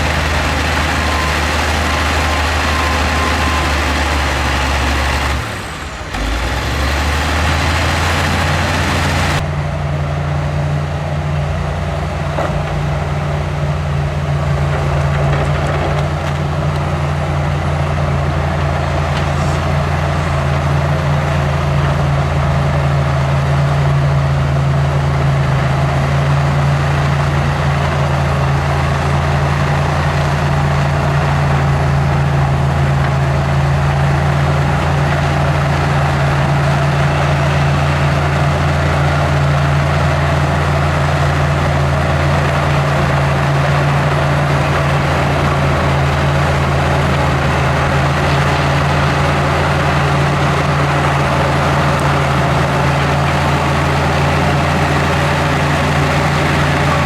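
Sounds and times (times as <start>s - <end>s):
diesel engine drone: 0.0s - 57.0s.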